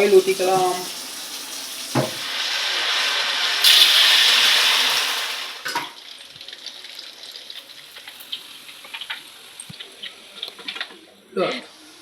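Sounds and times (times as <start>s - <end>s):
knock: 2.0s - 2.2s.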